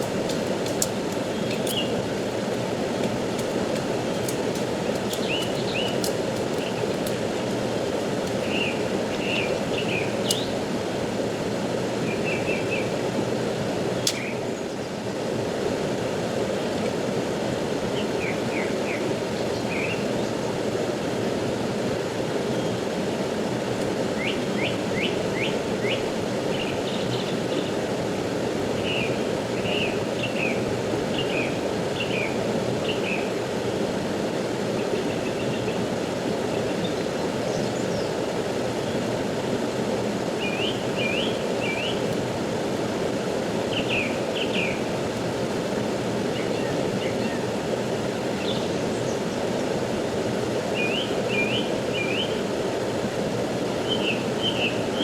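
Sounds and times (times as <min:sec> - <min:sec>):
small birds chirping: 0:00.0 - 0:10.6
fast-flowing river rushing: 0:00.0 - 0:12.1, 0:27.3 - 0:55.0.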